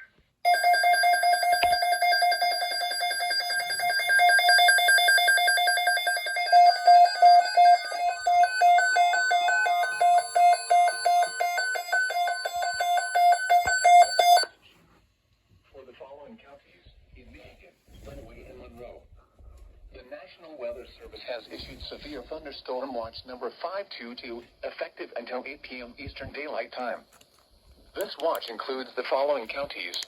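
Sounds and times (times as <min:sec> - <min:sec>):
electronic alert alarm beeping: 0:00.5 - 0:14.5.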